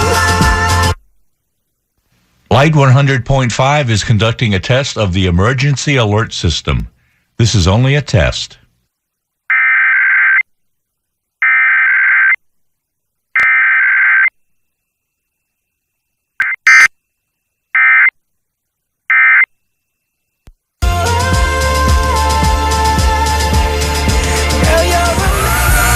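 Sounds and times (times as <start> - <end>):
music: 0.0 - 1.0, 20.8 - 25.9
buzzing digital data bursts: 13.4 - 18.1.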